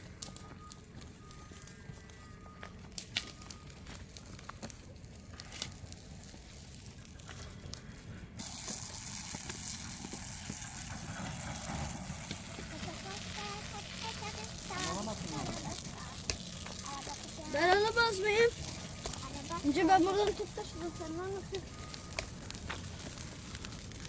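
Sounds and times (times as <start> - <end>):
steady rushing hiss: 8.4 - 24.0
low rumble: 9.2 - 19.6.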